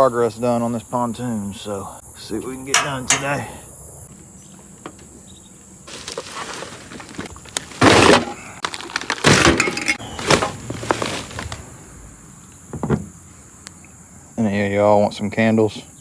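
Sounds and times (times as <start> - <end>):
insects droning: 0.0 - 16.0
objects clattering and rattling: 2.8 - 3.4, 5.9 - 11.6.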